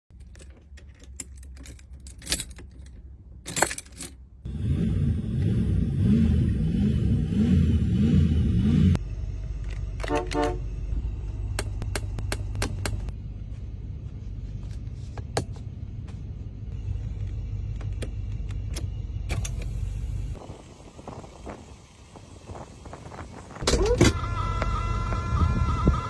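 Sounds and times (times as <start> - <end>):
car engine low rumble: 0.1 - 26.0
car horn toot: 10.0 - 10.7, 23.7 - 26.0.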